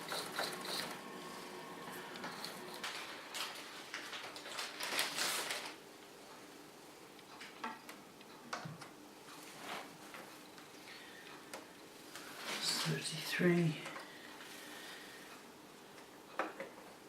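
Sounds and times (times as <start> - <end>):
scraping rustle: 2.0 - 5.8.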